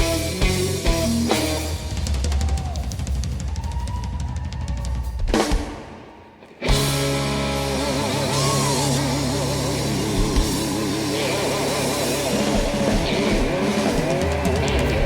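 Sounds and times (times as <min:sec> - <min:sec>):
lead guitar line with vibrato: 0:00.0 - 0:01.9, 0:06.5 - 0:15.0
live blues rock band: 0:00.0 - 0:15.0.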